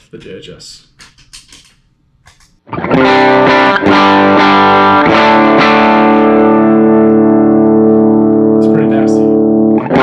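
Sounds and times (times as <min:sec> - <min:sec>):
guitar string and pick noise: 0:02.3 - 0:10.0
overdriven electric guitar chords: 0:02.7 - 0:10.0.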